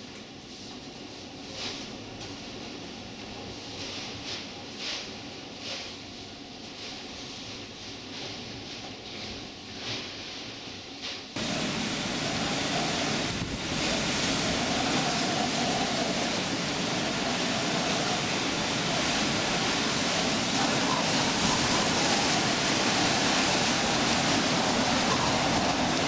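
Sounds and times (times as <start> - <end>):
hurricane wind rushing: 11.4 - 26.0.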